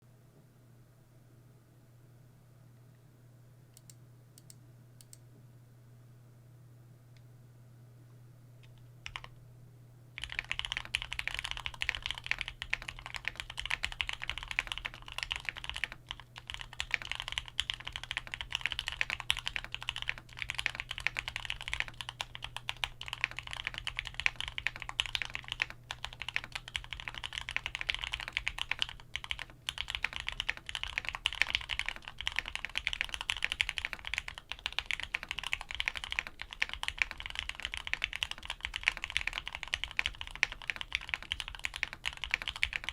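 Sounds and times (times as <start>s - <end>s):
typing on mechanical keyboard: 8.7s - 9.3s, 10.2s - 42.9s.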